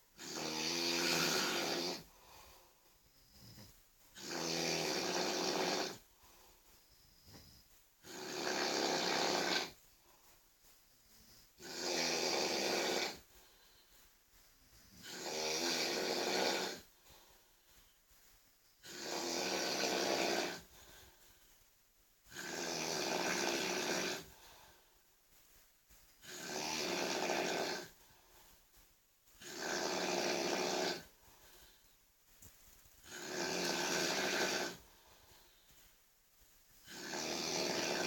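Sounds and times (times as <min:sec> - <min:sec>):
person snoring loudly: 0:00.2 - 0:02.1, 0:04.2 - 0:06.0, 0:08.0 - 0:09.8, 0:11.6 - 0:13.2, 0:15.0 - 0:16.9, 0:18.8 - 0:20.7, 0:22.3 - 0:24.4, 0:26.2 - 0:28.0, 0:29.4 - 0:31.1, 0:33.0 - 0:34.9, 0:36.8 - 0:38.0.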